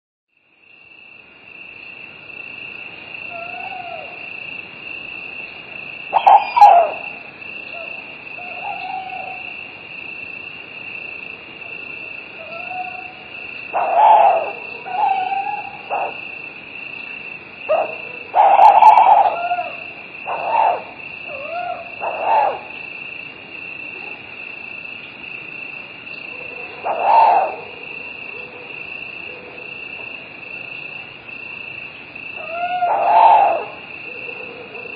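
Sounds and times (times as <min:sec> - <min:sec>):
crickets chirring: 0:00.4 - 0:34.9
night animal calls: 0:03.1 - 0:34.9.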